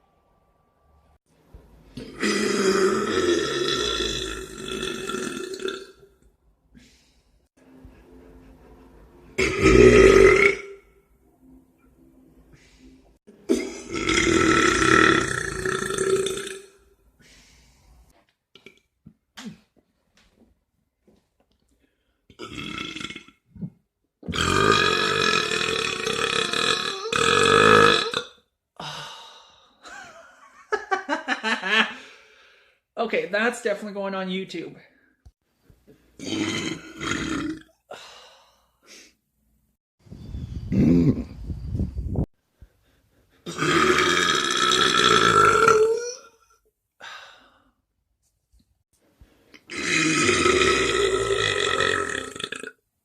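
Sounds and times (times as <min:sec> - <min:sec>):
person burping: 0:02.0 - 0:06.0, 0:09.4 - 0:10.8, 0:13.4 - 0:16.8, 0:22.3 - 0:28.4, 0:36.2 - 0:37.8, 0:40.7 - 0:41.4, 0:43.5 - 0:46.4, 0:49.6 - 0:52.8.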